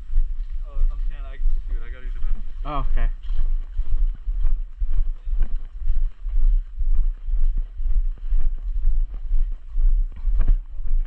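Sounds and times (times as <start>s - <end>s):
low rumble: 0.0s - 11.0s
footsteps thumping: 7.4s - 11.0s.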